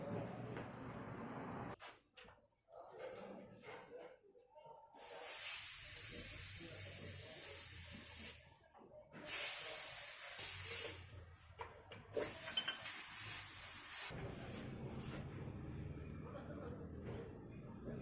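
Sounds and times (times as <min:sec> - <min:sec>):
pressurized hissing spray: 0:05.0 - 0:08.4, 0:09.3 - 0:11.0, 0:12.2 - 0:14.1.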